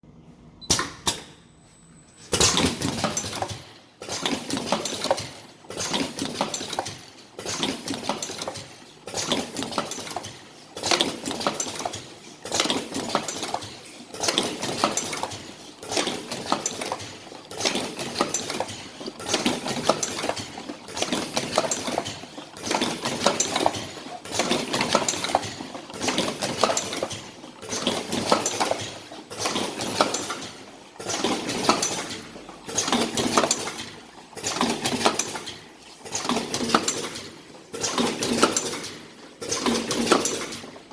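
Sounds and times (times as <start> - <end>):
packaging machine clattering: 2.3 - 40.9.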